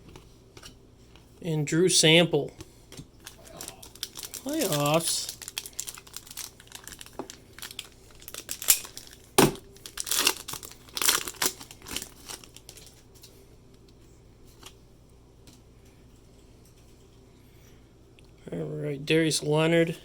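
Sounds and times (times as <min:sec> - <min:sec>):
foil wrapper tearing and crinkling: 0:03.2 - 0:13.0.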